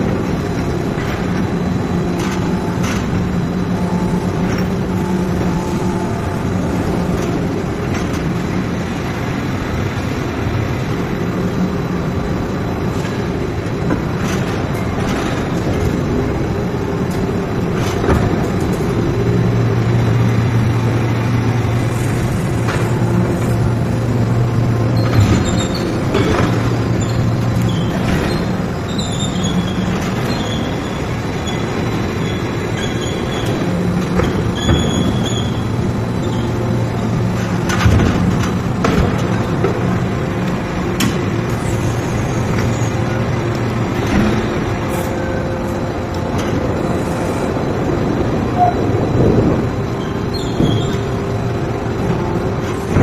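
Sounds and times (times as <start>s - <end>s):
factory machinery rumble: 0.0s - 53.0s
high metallic squeals: 26.8s - 36.7s, 49.8s - 51.2s.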